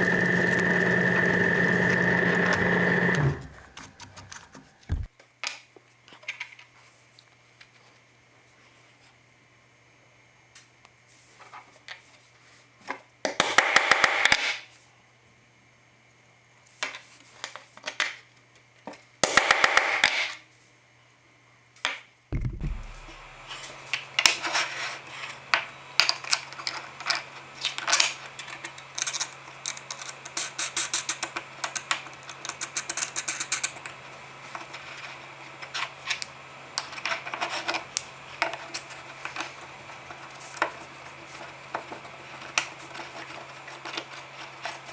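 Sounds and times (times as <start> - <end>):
low thump: 22.4 - 23.5
steady low hum: 22.4 - 23.7.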